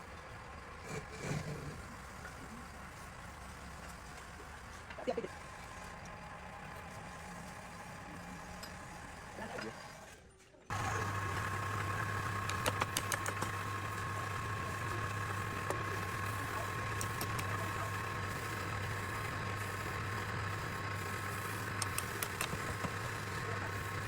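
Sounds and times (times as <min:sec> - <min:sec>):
wood lathe motor humming: 0:00.0 - 0:24.0
sharp ticks: 0:12.2 - 0:13.7, 0:16.8 - 0:17.9, 0:19.6 - 0:23.3.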